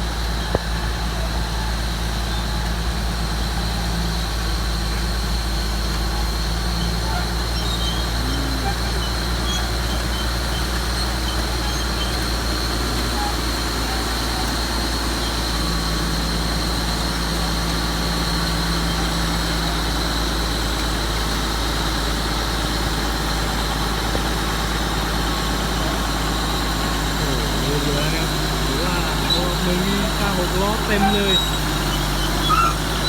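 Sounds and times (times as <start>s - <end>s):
heavy diesel machinery engine drone: 0.0s - 33.0s
deeper hum: 6.8s - 10.8s, 22.8s - 33.0s.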